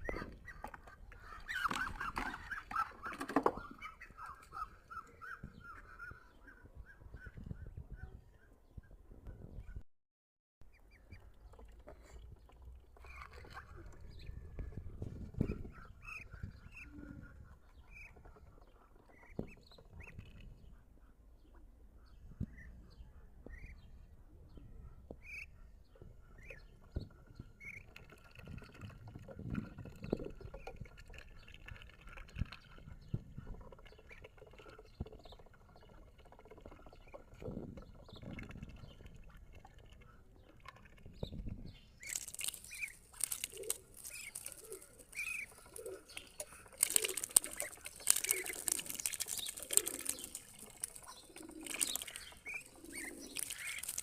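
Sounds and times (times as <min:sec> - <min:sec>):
birds chirping: 0:00.0 - 0:09.0, 0:31.4 - 0:54.0
rustling and wing-flapping: 0:41.4 - 0:54.0.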